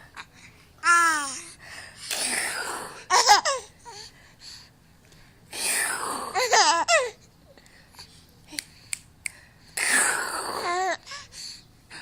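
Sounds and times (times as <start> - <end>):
baby laughing and squealing: 6.3 - 7.1.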